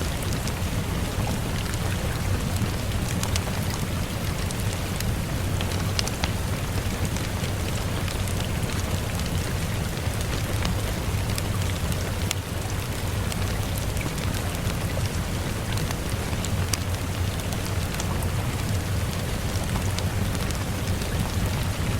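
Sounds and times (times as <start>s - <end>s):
steady rain falling: 0.0s - 21.9s.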